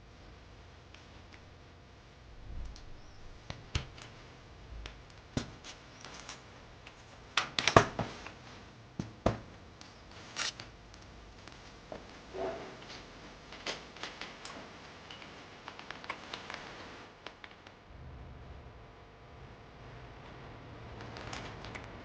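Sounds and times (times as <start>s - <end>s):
objects clicking and tapping: 12.8s - 17.8s.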